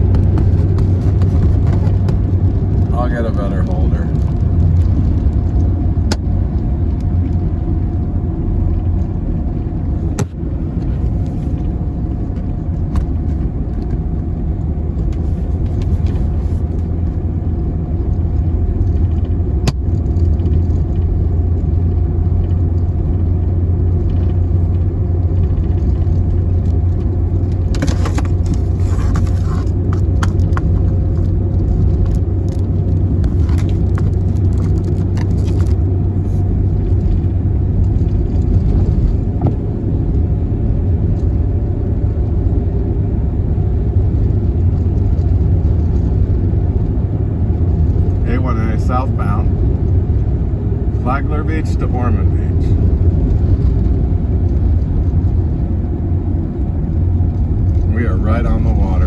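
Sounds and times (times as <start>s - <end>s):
van driving on highway: 0.0s - 59.0s.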